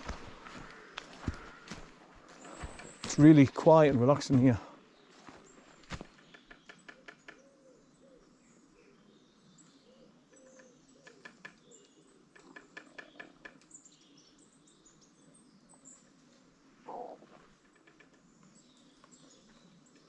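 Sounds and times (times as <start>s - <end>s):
low wavering bird calls: 0.0s - 3.3s, 4.9s - 20.0s.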